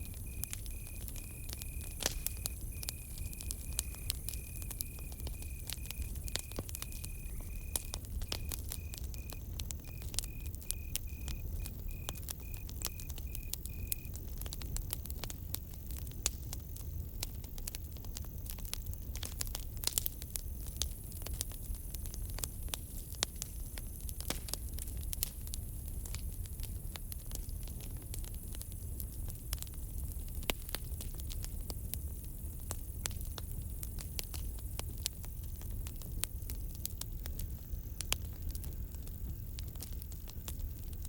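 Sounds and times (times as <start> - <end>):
cricket chirping: 0.0 - 19.2
campfire crackling: 0.0 - 41.0.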